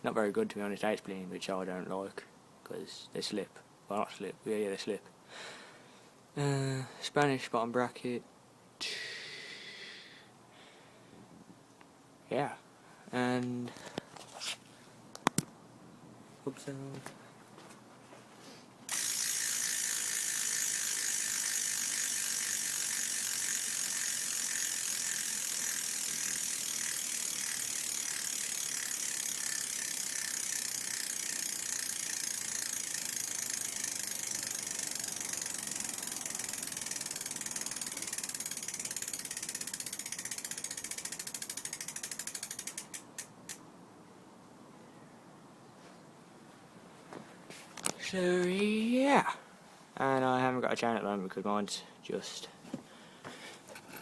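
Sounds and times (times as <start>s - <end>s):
bicycle hub ratchet clicking: 18.9s - 43.6s.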